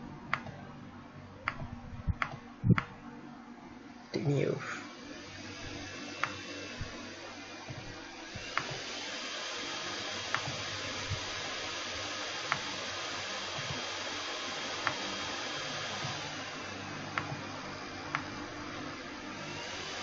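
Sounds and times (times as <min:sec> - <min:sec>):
computer mouse clicking: 0:00.3 - 0:00.6, 0:01.4 - 0:02.9, 0:12.5 - 0:12.7, 0:17.1 - 0:17.5, 0:18.1 - 0:18.4.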